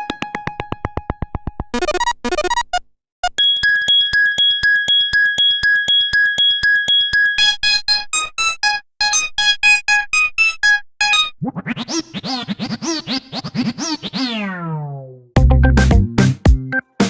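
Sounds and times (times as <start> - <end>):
synth ringtone melody: 1.8 - 9.8
warbling buzzy synth ringtone: 3.3 - 9.6.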